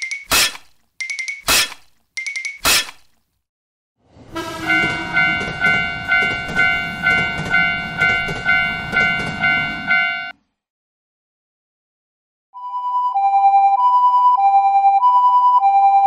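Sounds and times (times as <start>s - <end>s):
passing train rumble: 4.0s - 10.3s
level crossing warning bell: 4.4s - 10.4s.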